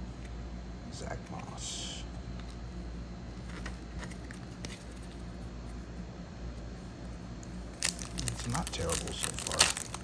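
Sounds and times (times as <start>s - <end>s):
low background hum: 0.0s - 10.0s
trading cards being handled: 2.4s - 6.0s, 7.4s - 10.0s.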